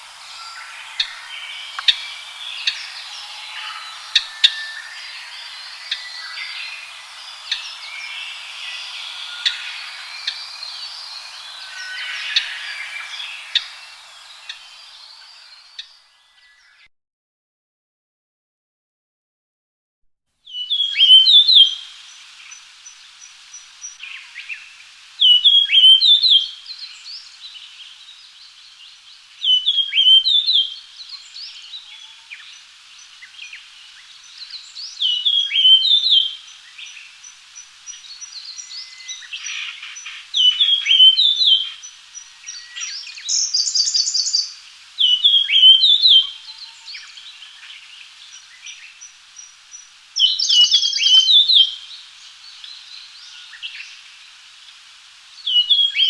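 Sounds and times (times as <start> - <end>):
faint high ticking: 0.0 - 16.0
rapid high bird notes: 0.0 - 16.0
bird singing whistled notes: 0.0 - 16.7, 33.2 - 48.9, 50.2 - 51.9.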